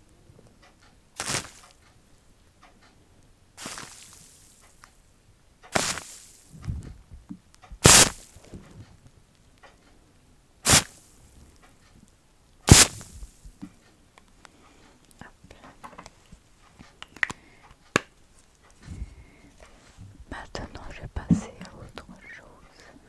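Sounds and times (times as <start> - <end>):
sharp swishing strokes: 7.8 - 8.2, 10.7 - 11.0, 12.7 - 13.3.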